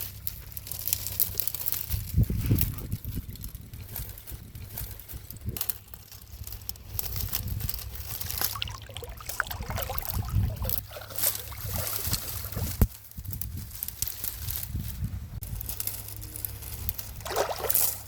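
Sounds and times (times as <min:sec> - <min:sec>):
water trickling and sloshing: 0:08.2 - 0:12.8, 0:17.2 - 0:18.0.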